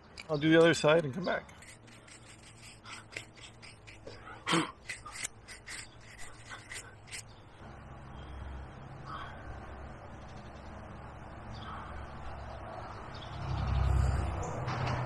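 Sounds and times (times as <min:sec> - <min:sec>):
carving tools clicking and scraping wood: 0:00.0 - 0:07.3.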